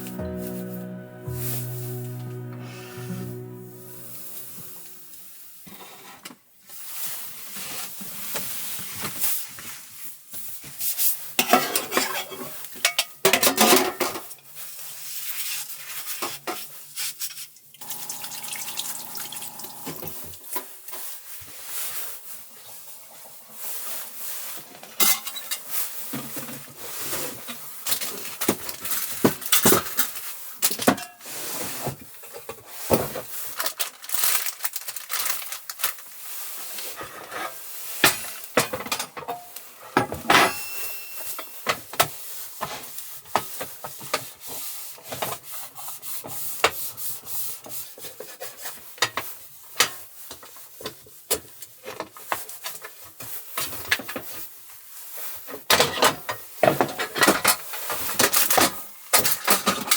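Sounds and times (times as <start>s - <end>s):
pots and utensils clinking: 17.8s - 20.1s.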